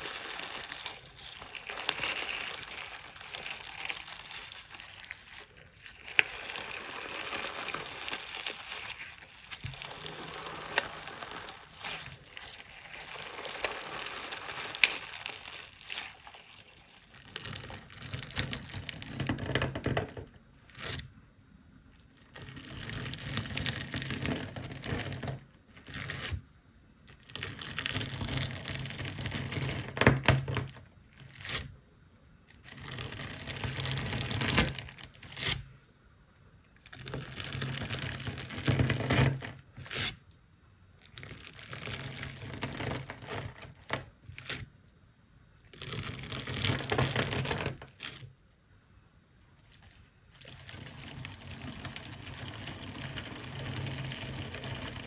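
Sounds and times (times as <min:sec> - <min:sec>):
crunchy slime crackling and popping: 0:00.0 - 0:19.2.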